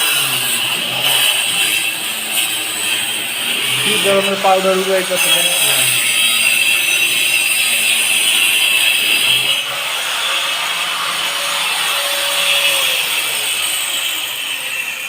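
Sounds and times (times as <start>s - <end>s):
hand pump rasping: 0.0s - 9.6s.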